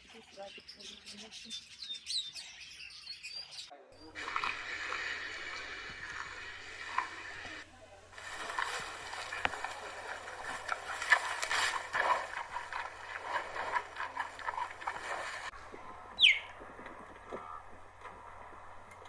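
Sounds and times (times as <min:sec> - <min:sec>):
animal chatter of calls and clicks: 0:04.0 - 0:15.5
sharp whistle-like animal call: 0:16.2 - 0:16.5.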